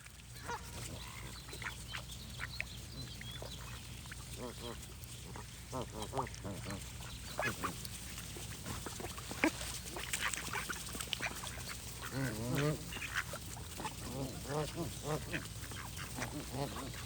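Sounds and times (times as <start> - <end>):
geese honking: 4.4 - 17.0.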